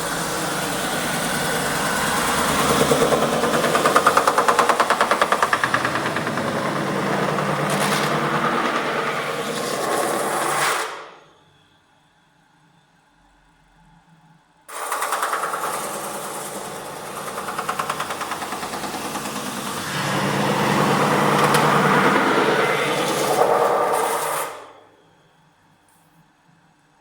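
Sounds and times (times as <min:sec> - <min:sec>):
low machine hum: 0:00.0 - 0:10.5, 0:15.5 - 0:25.8
metal spinning roller chatter: 0:00.0 - 0:10.6, 0:14.7 - 0:24.7.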